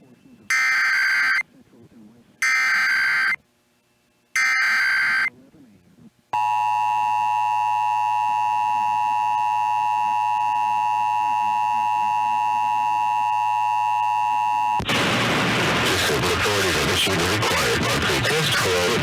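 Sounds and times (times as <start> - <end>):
two-tone alert tone: 4.4 - 5.3.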